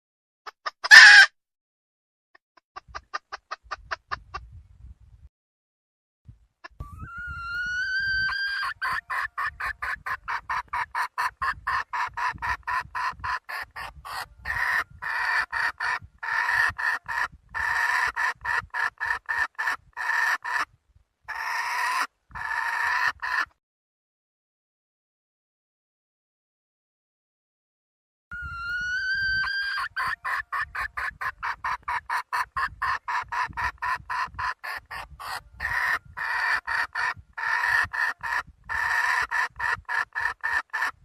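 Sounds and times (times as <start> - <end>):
hen clucking: 0.5 - 1.3, 2.8 - 4.5, 6.6 - 20.7, 21.3 - 23.5, 28.4 - 41.0.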